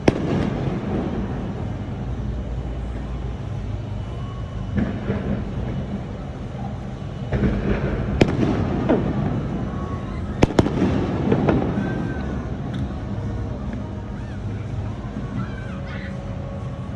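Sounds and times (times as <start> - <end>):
fireworks bangs: 0.0 - 3.6, 4.6 - 13.5
fireworks crackling: 0.0 - 15.4.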